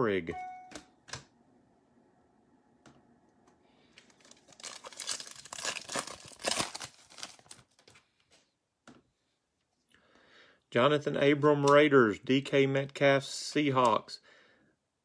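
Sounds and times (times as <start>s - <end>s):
wrapper tearing and crinkling: 4.0s - 8.0s.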